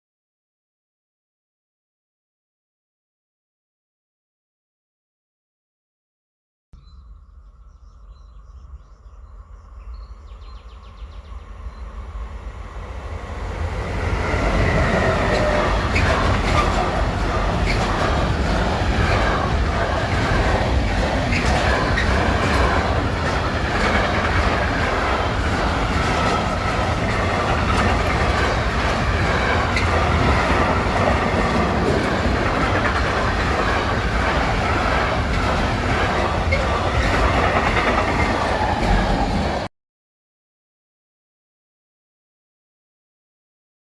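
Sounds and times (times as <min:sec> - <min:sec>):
freight train passing: 0:08.6 - 0:39.7
wheels clattering over rail joints: 0:14.5 - 0:39.7.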